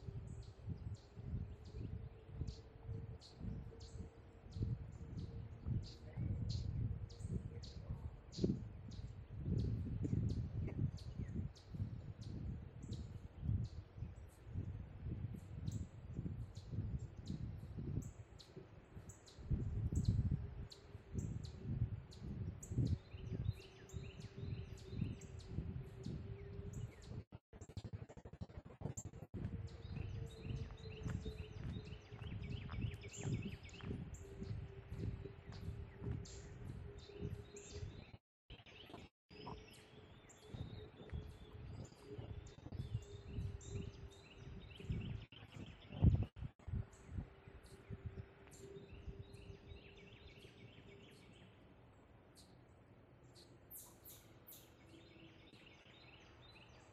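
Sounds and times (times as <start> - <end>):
songbirds chirping: 0.0 - 27.3, 28.8 - 56.9
footsteps on trail: 29.4 - 37.4, 38.9 - 43.5.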